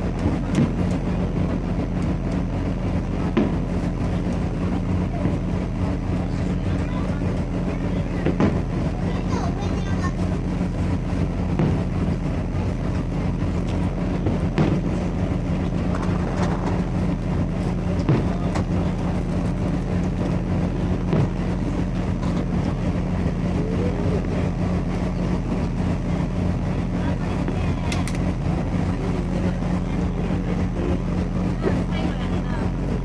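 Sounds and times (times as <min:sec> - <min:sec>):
steady low hum: 0:00.0 - 0:33.0
fireworks bursting: 0:00.1 - 0:06.8, 0:07.5 - 0:23.5.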